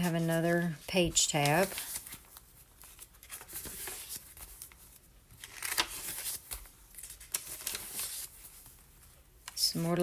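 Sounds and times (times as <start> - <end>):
paper pages rustling: 0.0 - 9.8.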